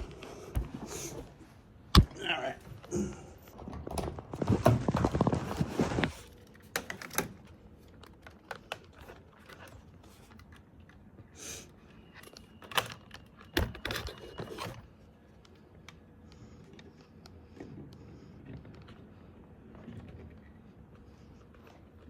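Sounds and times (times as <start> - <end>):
rustling clatter: 3.5 - 6.4.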